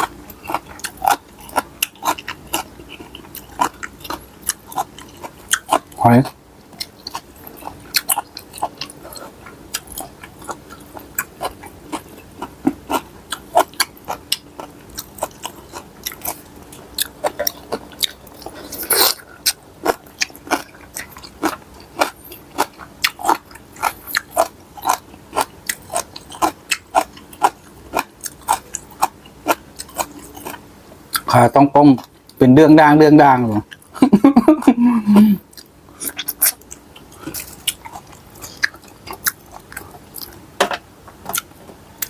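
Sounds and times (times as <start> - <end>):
wet chewing and crunching: 0.0 - 32.4, 35.5 - 40.4, 41.0 - 42.0.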